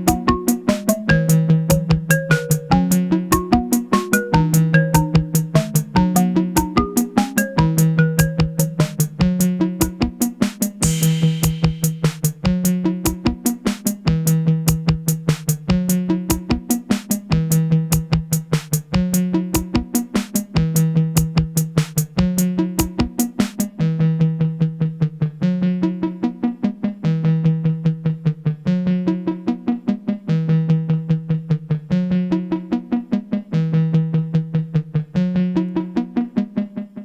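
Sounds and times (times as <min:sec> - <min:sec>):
plucked synth melody: 0:00.0 - 0:09.1
synthesizer sequenced pattern: 0:00.0 - 0:12.0.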